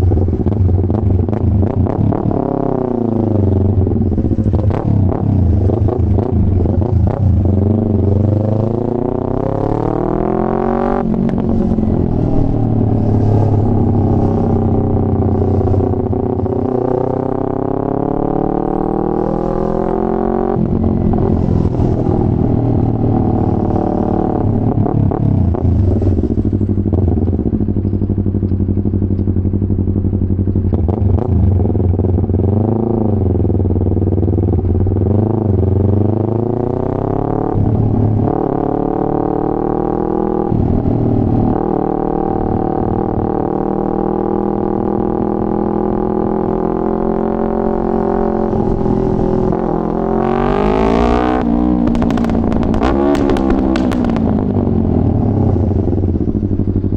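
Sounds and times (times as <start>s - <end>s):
motorcycle engine revving: 0.0s - 56.9s
exhaust cracks: 47.9s - 56.9s.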